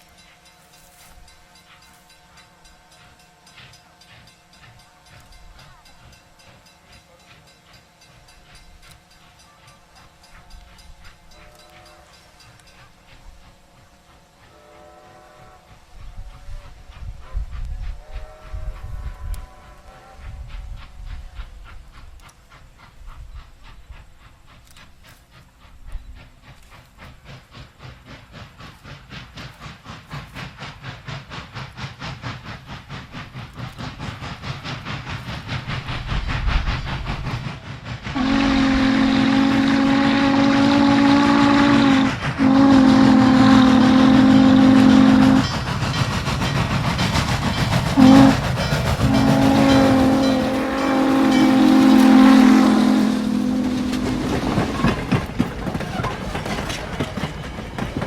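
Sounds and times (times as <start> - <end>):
steam locomotive exhaust chuffs: 0.0 - 58.0
steam whistle blasts: 8.0 - 21.4, 38.2 - 45.6, 47.9 - 54.8.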